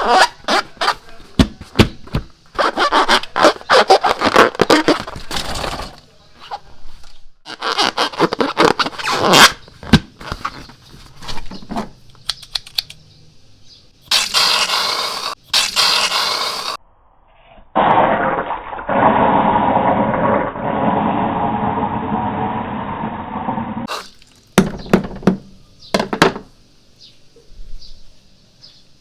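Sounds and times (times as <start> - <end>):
spray can spraying: 14.1 - 16.8, 23.9 - 24.4.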